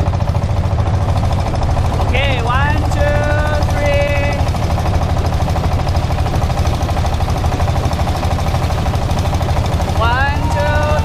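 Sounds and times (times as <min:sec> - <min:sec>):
motorboat engine knocking: 0:00.0 - 0:11.0.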